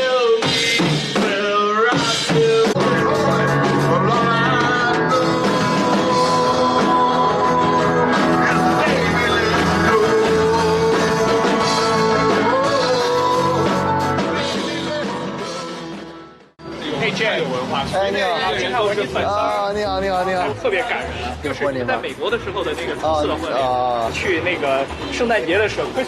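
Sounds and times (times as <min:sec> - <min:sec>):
person singing: 0:00.0 - 0:16.1
rock band playing: 0:00.0 - 0:26.0.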